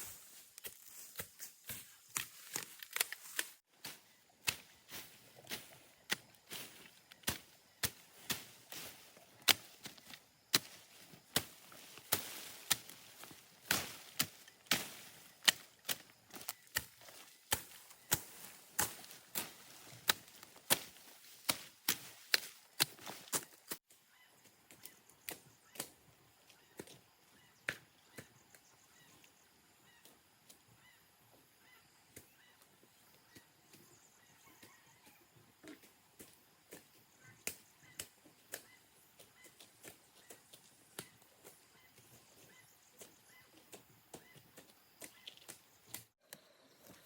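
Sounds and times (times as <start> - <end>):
hand tool chopping vegetation: 0.0 - 23.8, 35.6 - 46.2.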